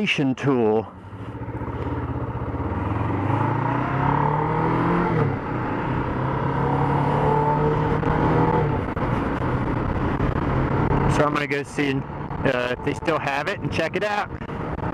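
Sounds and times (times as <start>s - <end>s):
motorcycle engine accelerating: 1.0s - 11.4s.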